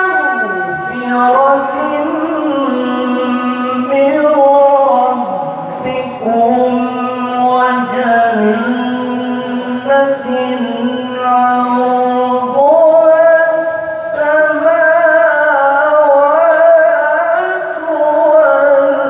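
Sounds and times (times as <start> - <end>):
man reciting melodic chant: 0.0 - 19.0.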